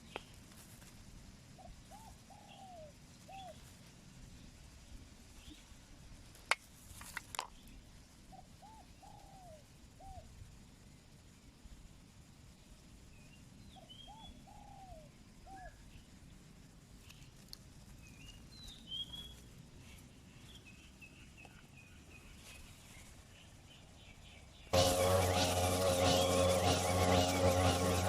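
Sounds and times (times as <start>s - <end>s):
faint outdoor background: 0.0s - 28.0s
loud engine: 24.7s - 28.0s.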